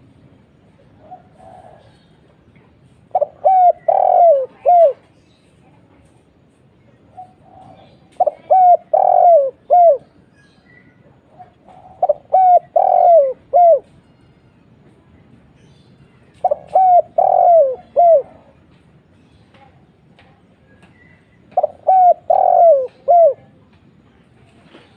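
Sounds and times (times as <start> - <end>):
dove cooing: 1.0 - 2.0, 3.1 - 5.1, 7.1 - 10.2, 11.2 - 14.0, 16.4 - 18.6, 21.5 - 23.6.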